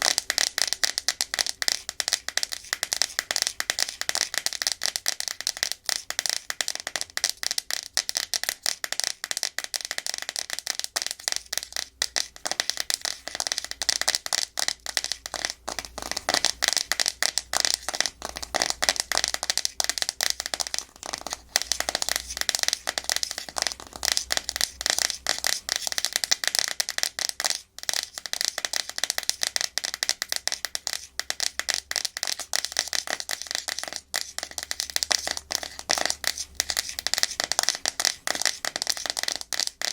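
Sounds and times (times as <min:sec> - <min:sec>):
fingernails tapping and scratching plastic: 0:00.0 - 0:39.9.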